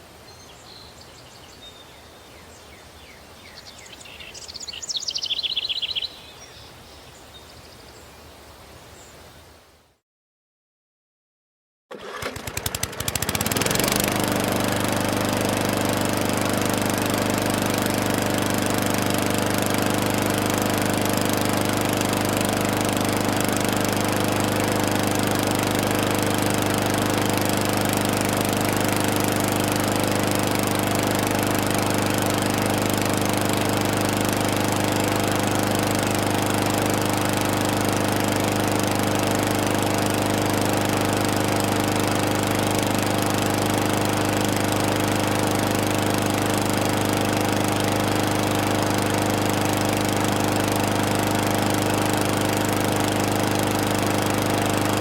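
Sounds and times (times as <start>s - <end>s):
lawn mower engine: 11.9s - 55.0s.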